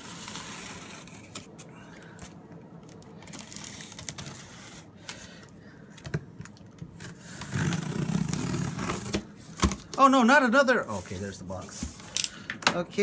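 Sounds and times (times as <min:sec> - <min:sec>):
cardboard rustling and scraping: 0:00.0 - 0:02.3, 0:03.2 - 0:05.0, 0:06.9 - 0:09.8, 0:10.8 - 0:12.2.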